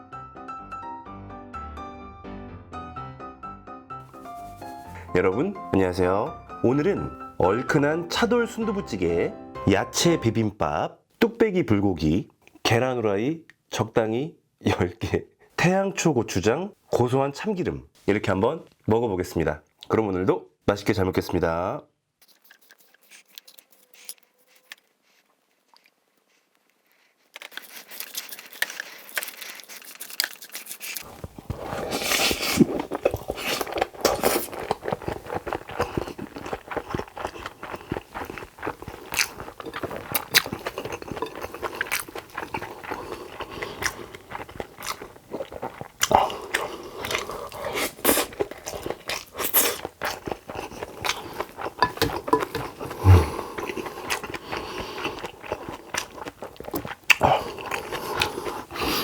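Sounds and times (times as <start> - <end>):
person chewing and crunching food: 4.0 - 5.5, 22.2 - 59.0.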